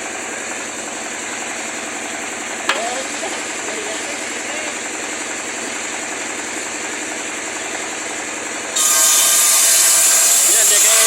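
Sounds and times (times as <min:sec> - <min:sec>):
woodworking power tool running: 0:00.0 - 0:11.0
loud high-pitched hissing: 0:08.8 - 0:11.0.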